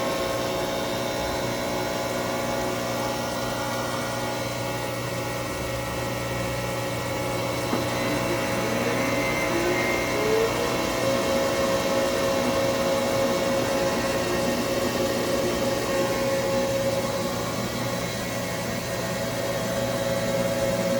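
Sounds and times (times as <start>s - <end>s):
grinder machine humming: 0.0s - 20.9s.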